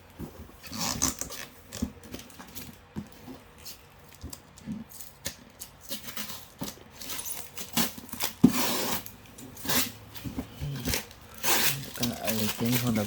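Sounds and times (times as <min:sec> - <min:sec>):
cardboard box scratching and rustling: 0:05.9 - 0:13.0.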